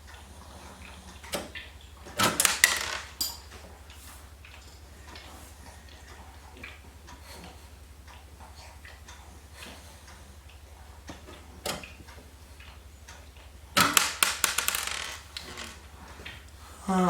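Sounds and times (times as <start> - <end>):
rapid clattering of screws: 2.1 - 3.6, 13.8 - 16.4
low hum with fast ticking: 3.8 - 13.8.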